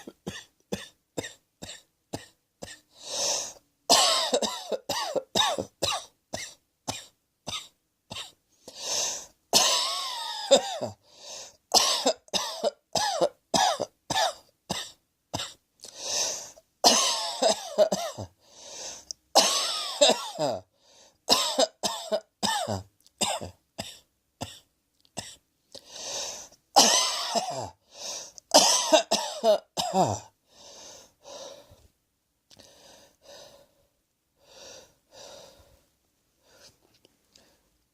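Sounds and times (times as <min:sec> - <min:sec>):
person coughing: 0:00.0 - 0:02.9, 0:03.9 - 0:08.4, 0:09.6 - 0:11.0, 0:11.7 - 0:15.6, 0:16.8 - 0:18.4, 0:19.4 - 0:20.7, 0:21.3 - 0:25.4, 0:26.8 - 0:27.8, 0:28.5 - 0:30.4
drawn-in breaths: 0:25.8 - 0:26.6.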